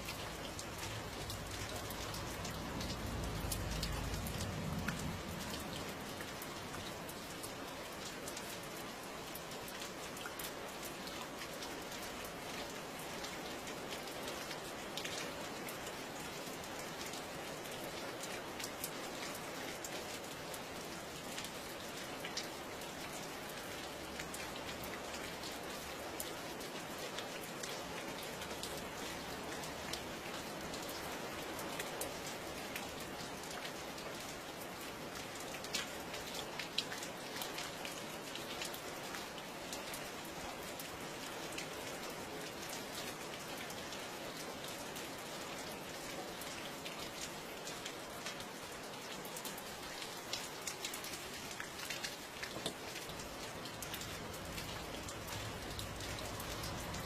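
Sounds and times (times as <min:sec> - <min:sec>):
steady rain hissing: 0:00.0 - 0:57.0
water dripping: 0:52.4 - 0:57.0.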